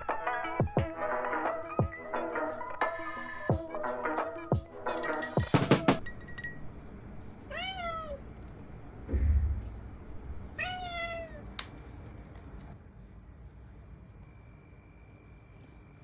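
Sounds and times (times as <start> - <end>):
cat meowing: 7.5 - 8.3, 10.6 - 11.6
low thump: 9.1 - 9.9.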